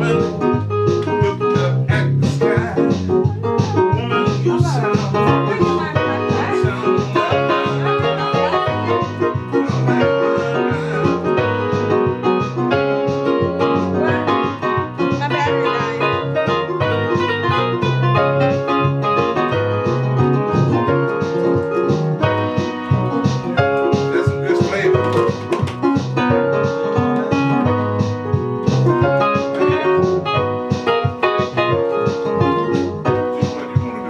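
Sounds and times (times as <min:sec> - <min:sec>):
electric keyboard piano chords: 0:00.0 - 0:34.0.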